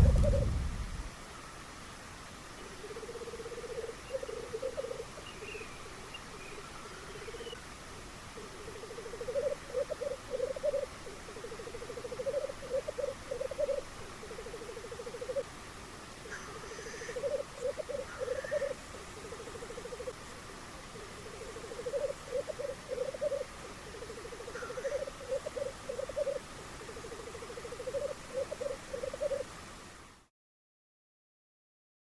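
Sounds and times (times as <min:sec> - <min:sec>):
black grouse bubbling lek song: 0:00.0 - 0:01.1, 0:08.3 - 0:15.5, 0:16.2 - 0:29.5.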